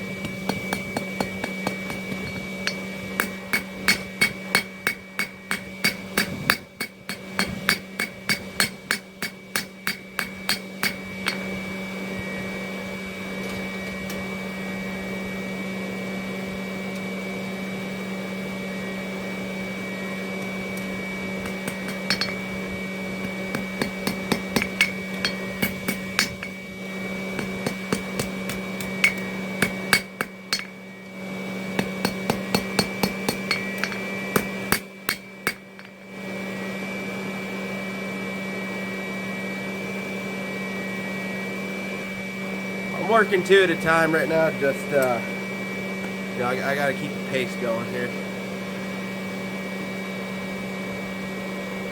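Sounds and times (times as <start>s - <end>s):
steady low hum: 0.0s - 39.0s
hammer striking steel on anvil: 0.2s - 11.6s, 21.4s - 26.7s, 27.4s - 30.8s, 31.8s - 36.0s.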